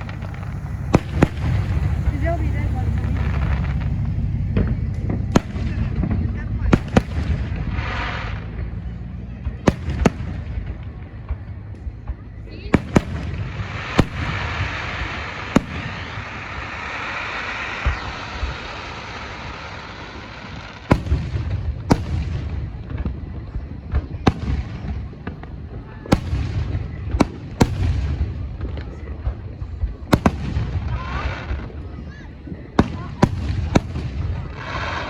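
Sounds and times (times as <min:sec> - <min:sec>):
fireworks hiss: 0:00.0 - 0:09.1, 0:09.7 - 0:23.6, 0:30.0 - 0:35.0
low rumble: 0:00.0 - 0:18.9
fireworks bangs: 0:00.0 - 0:35.0.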